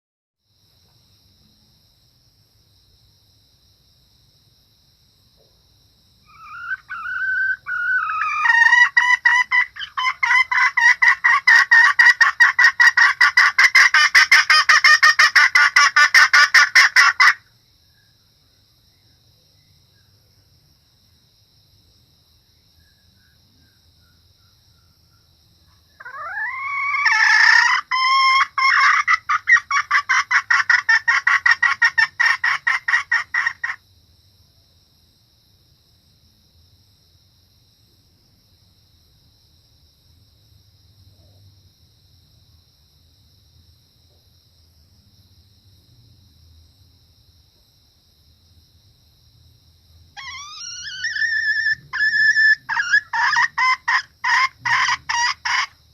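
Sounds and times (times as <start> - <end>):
hen cackling: 6.3 - 17.5, 26.0 - 33.8, 50.2 - 55.8.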